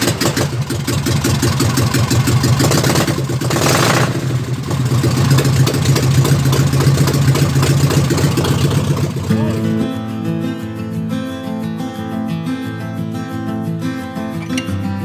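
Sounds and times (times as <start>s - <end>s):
car engine idling loudly: 0.0s - 10.2s.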